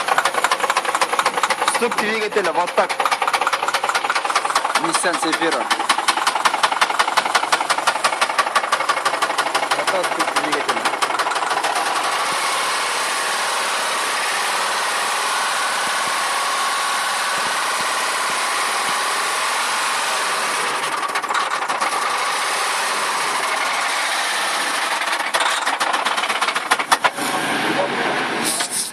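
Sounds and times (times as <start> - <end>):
car engine knocking: 0.0 - 12.5, 20.5 - 27.2
rapid engine ticking: 0.0 - 27.2.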